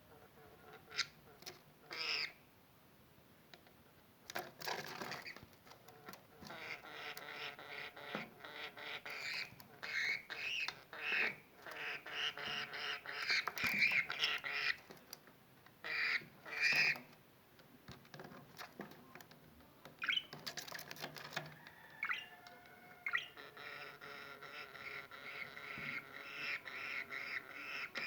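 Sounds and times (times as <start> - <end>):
budgerigar chattering and squawking: 1.8 - 2.4, 6.4 - 14.9, 15.8 - 17.1, 20.0 - 20.4, 22.0 - 22.4, 23.0 - 28.0.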